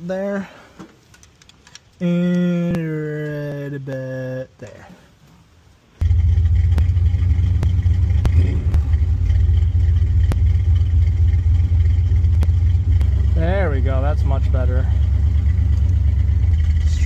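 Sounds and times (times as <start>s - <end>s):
engine idling with low rumble: 6.0s - 17.0s.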